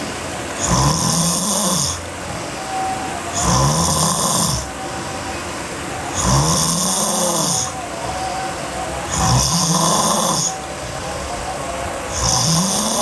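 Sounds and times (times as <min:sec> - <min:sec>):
quiet breathing: 0:00.0 - 0:13.0
girl snoring loudly: 0:00.6 - 0:02.0, 0:03.4 - 0:04.7, 0:06.1 - 0:07.8, 0:09.1 - 0:10.6, 0:12.1 - 0:13.0.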